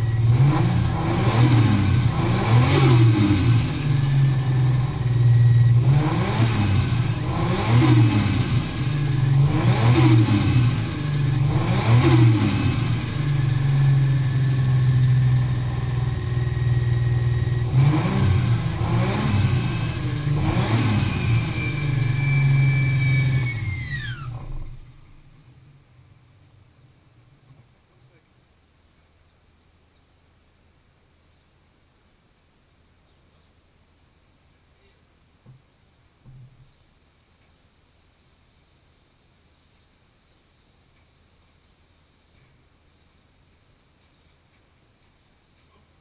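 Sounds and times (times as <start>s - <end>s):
car engine revving: 0.0s - 25.4s
turbo whine: 0.0s - 25.4s.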